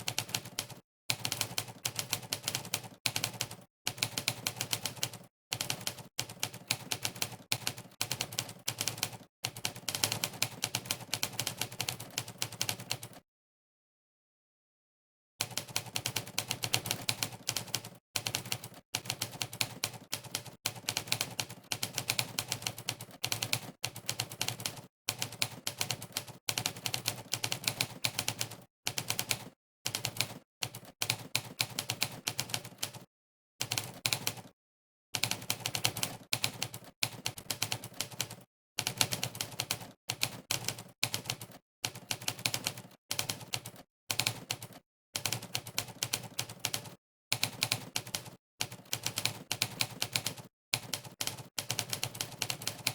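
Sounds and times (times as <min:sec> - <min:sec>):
typewriter keystroke clacks: 0:35.2 - 0:52.9.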